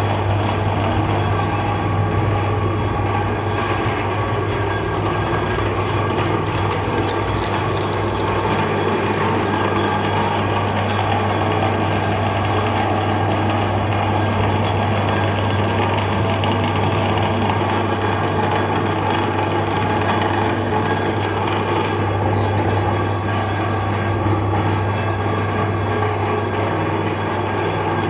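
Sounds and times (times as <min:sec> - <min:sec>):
meat grinder motor grinding: 0:00.1 - 0:01.8, 0:05.6 - 0:11.2.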